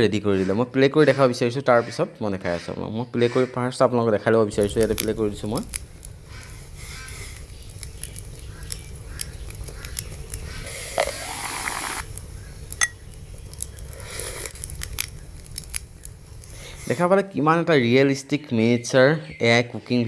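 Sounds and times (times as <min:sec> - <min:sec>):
steady low rumble: 0:04.4 - 0:17.4
hiss: 0:06.3 - 0:07.8, 0:10.4 - 0:12.6, 0:13.8 - 0:14.9.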